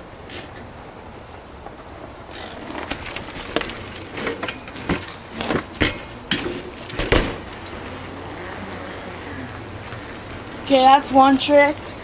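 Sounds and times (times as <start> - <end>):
bike knocking on hard ground: 2.6 - 7.8.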